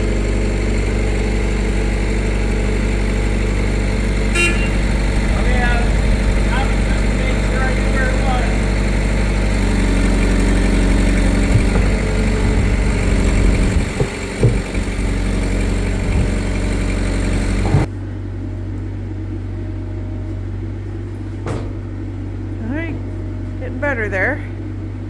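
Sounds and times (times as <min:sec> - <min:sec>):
skid steer engine running: 0:00.0 - 0:25.0
knocks: 0:11.2 - 0:15.2, 0:21.1 - 0:21.9.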